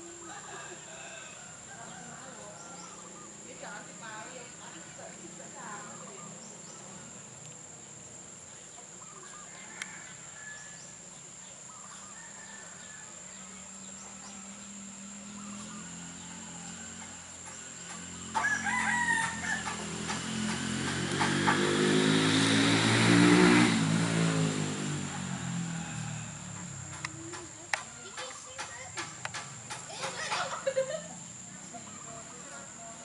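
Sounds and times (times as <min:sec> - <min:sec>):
rooster crowing: 0:00.3 - 0:03.2, 0:09.1 - 0:11.0, 0:11.9 - 0:13.6, 0:15.3 - 0:22.2, 0:25.2 - 0:26.7.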